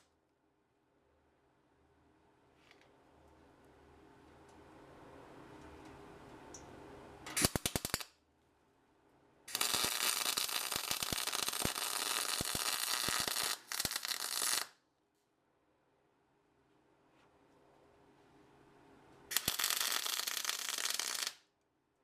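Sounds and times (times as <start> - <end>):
welding arc crackling: 7.3 - 8.1, 9.5 - 14.7, 19.3 - 21.4.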